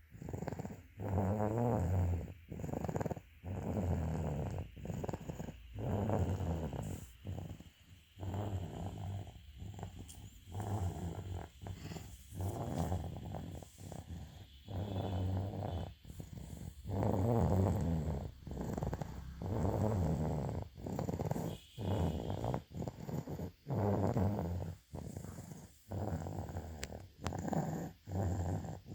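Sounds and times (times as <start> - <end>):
low buzzing snores: 0.0 - 28.9.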